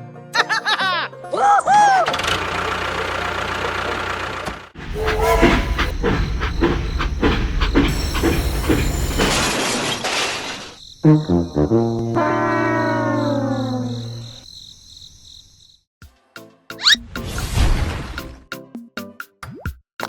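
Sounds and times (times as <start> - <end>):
music: 0.0 - 1.9, 11.2 - 13.5, 16.0 - 20.0
rhythmic mechanical chugging: 2.2 - 9.6
machine hissing: 4.8 - 10.8.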